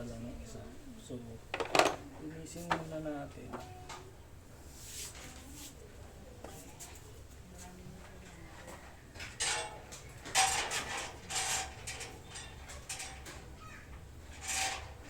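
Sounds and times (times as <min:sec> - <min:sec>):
hard parts clattering and clinking: 0:01.5 - 0:02.0, 0:09.2 - 0:15.0.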